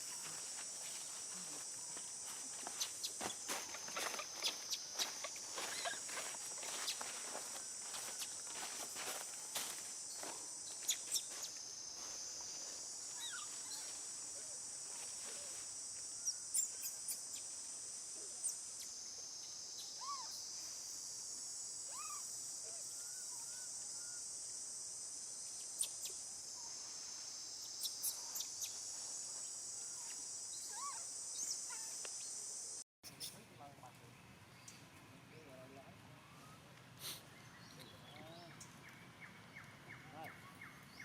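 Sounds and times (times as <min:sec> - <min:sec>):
high-pitched insect drone: 0:00.0 - 0:32.8
short chirping calls: 0:02.7 - 0:07.4, 0:10.7 - 0:11.6, 0:27.6 - 0:28.8.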